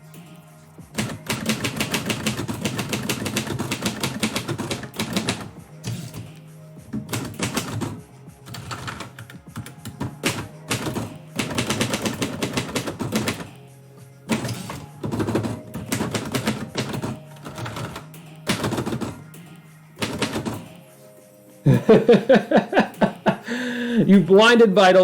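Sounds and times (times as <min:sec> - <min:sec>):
background music: 0:00.0 - 0:25.0
typewriter keys clacking: 0:01.0 - 0:13.6, 0:14.3 - 0:19.3, 0:20.0 - 0:20.8.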